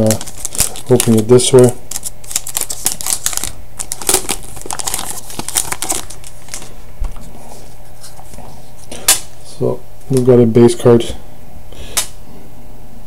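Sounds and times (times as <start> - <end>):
wrapper crinkling: 0.0 - 6.8.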